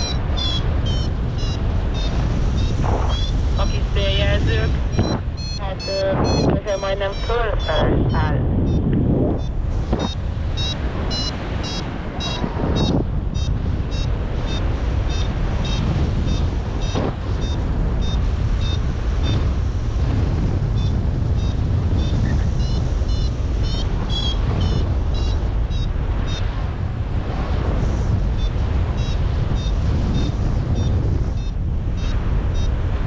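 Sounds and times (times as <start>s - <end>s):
variometer beeping high pips: 0.0s - 18.8s
wind buffeting microphone: 0.0s - 33.0s.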